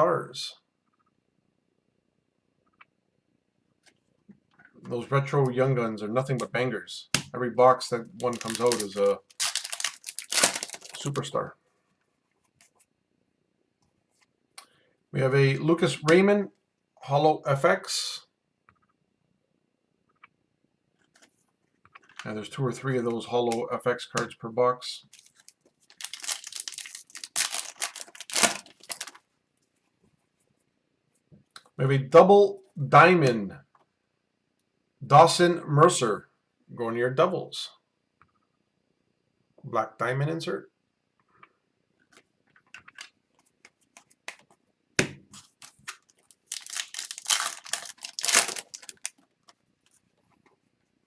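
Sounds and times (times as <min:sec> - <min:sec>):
foil wrapper crinkling and tearing: 0:08.1 - 0:11.2, 0:25.1 - 0:29.2, 0:45.4 - 0:49.6
cards clicking: 0:08.2 - 0:11.1
cards rustling and scraping: 0:08.2 - 0:11.1, 0:25.2 - 0:29.2, 0:45.3 - 0:50.4.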